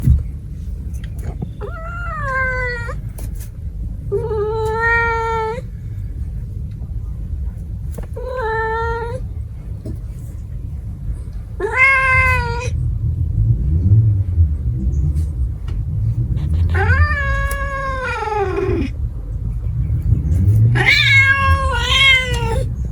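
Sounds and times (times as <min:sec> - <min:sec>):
low steady rumble: 0:00.0 - 0:22.9
cat meowing: 0:01.6 - 0:03.0, 0:04.1 - 0:05.7, 0:08.2 - 0:09.2, 0:11.6 - 0:12.8, 0:16.4 - 0:18.9, 0:20.6 - 0:22.8.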